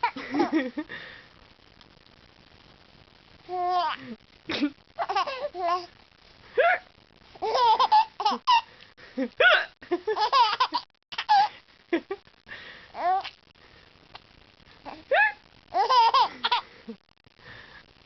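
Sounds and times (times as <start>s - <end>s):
baby laughing: 3.5s - 5.9s, 7.4s - 8.7s, 9.5s - 11.5s, 14.9s - 16.6s.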